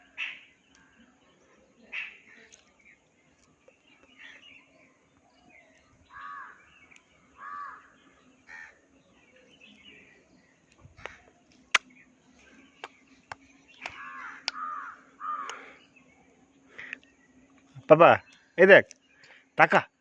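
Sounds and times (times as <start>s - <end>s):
crow cawing: 6.1s - 6.6s, 7.4s - 7.9s, 8.5s - 8.8s, 13.8s - 15.8s
sharp clicks: 12.8s - 14.6s.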